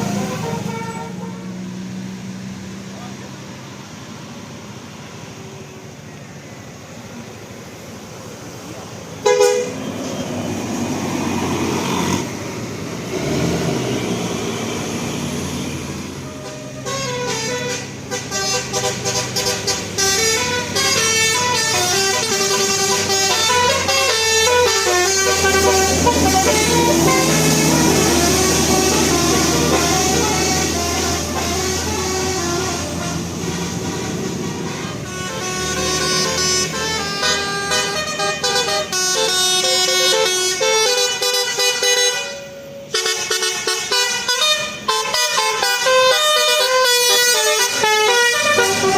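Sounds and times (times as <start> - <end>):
bus horn blast: 0.0 - 1.6, 9.2 - 10.4, 15.5 - 48.9
multi-tone musical horn melody: 0.0 - 1.6, 9.2 - 9.8, 16.2 - 48.9
bus engine running: 0.0 - 48.9.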